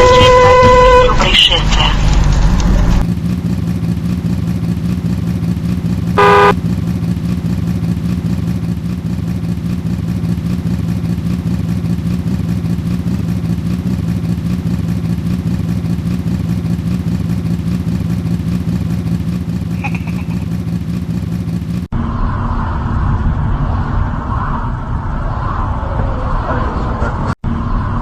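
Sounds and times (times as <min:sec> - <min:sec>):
short horn beep: 0:00.0 - 0:01.2, 0:06.2 - 0:06.6
vehicle engine running: 0:00.0 - 0:25.4.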